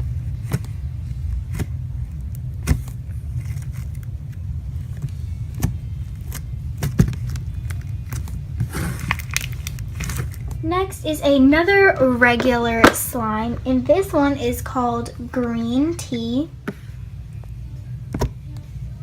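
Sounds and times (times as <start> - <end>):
steady low rumble: 0.0 - 19.0
slime squeezed popping: 8.7 - 10.2.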